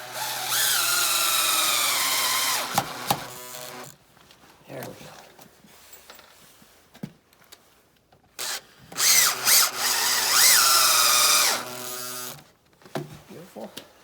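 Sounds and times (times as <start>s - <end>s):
power drill driving a screw: 0.0s - 4.0s, 8.4s - 12.4s.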